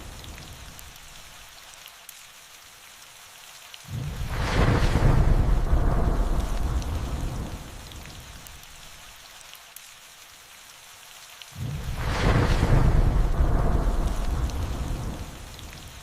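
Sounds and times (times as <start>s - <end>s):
rain hiss: 0.0s - 16.0s
raindrop ticks: 0.0s - 16.0s
thunderclap: 3.9s - 8.1s, 11.6s - 16.0s
thunder rumble: 3.9s - 8.5s, 11.6s - 16.0s.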